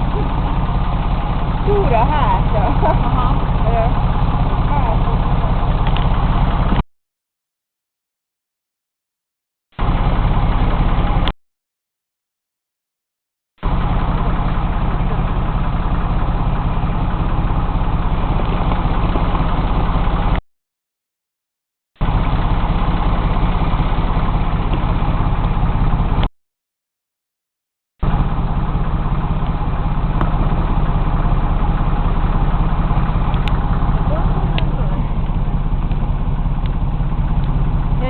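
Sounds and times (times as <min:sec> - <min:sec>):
boat engine droning: 0:00.0 - 0:06.8, 0:09.8 - 0:11.3, 0:13.6 - 0:20.4, 0:22.0 - 0:26.3, 0:28.0 - 0:38.0.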